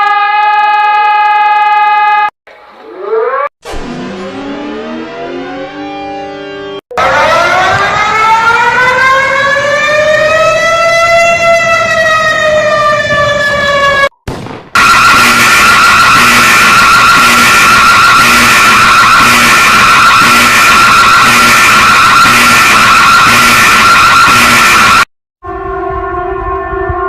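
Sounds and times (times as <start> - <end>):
siren winding up: 0.0 - 14.2, 14.8 - 25.1
loud high-pitched screech: 14.8 - 25.1.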